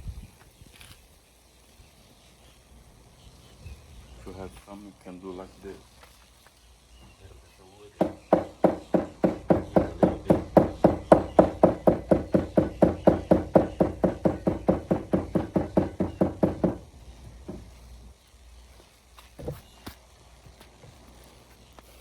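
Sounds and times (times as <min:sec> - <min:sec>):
rapid even knocking: 0:08.0 - 0:17.7.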